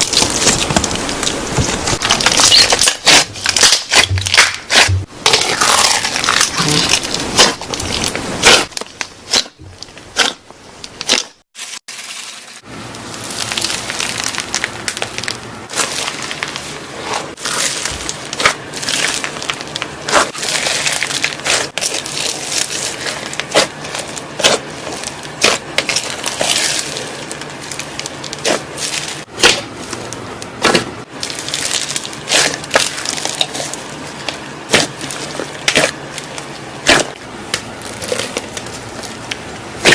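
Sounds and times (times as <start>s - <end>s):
crunchy slime crackling: 0.0s - 11.4s, 13.0s - 39.9s.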